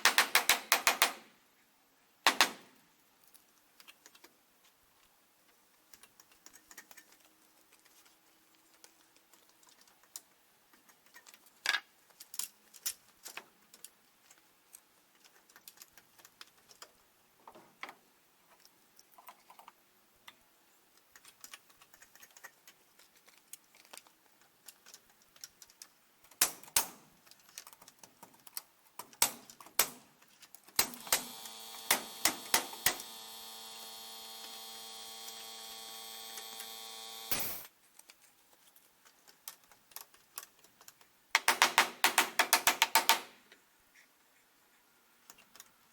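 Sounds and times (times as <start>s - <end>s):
electrical hum: 30.8s - 37.7s.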